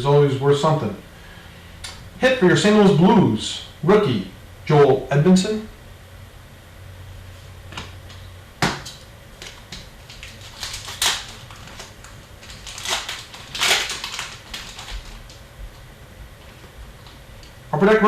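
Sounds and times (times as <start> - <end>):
trading cards clicking and rustling: 8.8 - 15.4.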